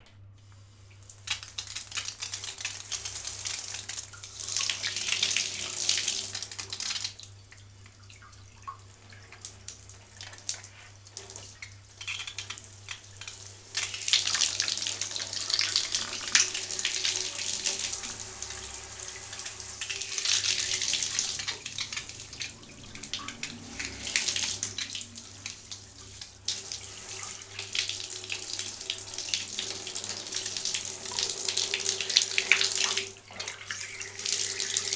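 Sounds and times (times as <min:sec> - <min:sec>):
shower water spraying on hand: 0:09.9 - 0:34.9.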